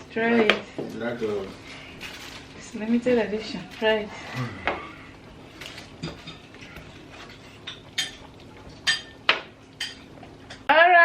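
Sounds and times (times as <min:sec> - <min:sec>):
utensils clinking on dishes: 0:05.6 - 0:10.7.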